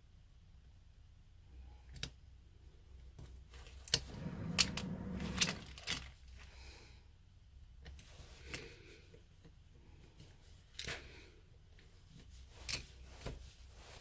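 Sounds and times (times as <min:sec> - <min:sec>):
scraping and rustling: 0:03.6 - 0:06.2, 0:10.1 - 0:14.0.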